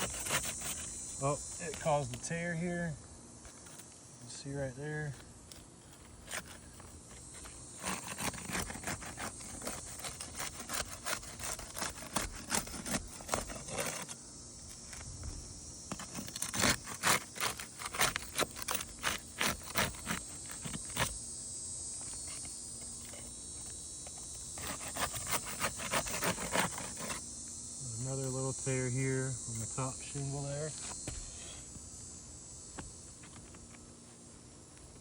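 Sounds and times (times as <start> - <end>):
roof shingles scraping and crackling: 0.0 - 1.0, 5.1 - 15.0, 15.9 - 21.2, 24.6 - 27.2.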